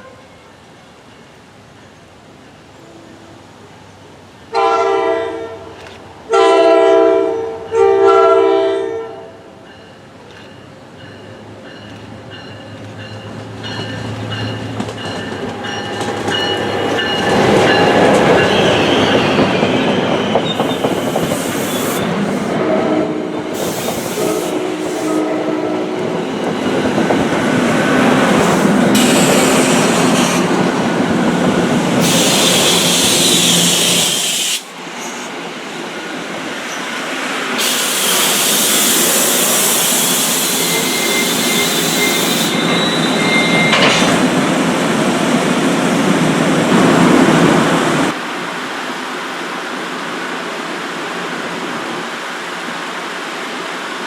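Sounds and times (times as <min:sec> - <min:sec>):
train engine and wheel noise: 0:00.0 - 0:54.0
hiss: 0:20.7 - 0:22.5, 0:23.5 - 0:25.3, 0:28.4 - 0:30.6, 0:31.9 - 0:35.4, 0:36.7 - 0:42.6
wheel squeal: 0:37.6 - 0:44.1.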